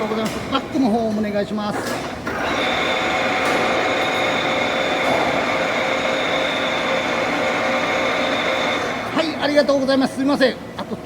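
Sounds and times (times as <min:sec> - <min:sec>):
lathe whining: 0:02.2 - 0:10.2.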